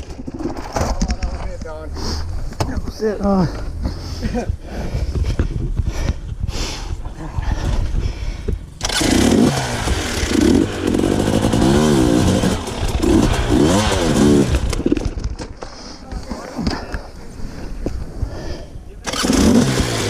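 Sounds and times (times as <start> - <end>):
motorcycle engine revving: 8.7 - 15.2, 19.0 - 20.0.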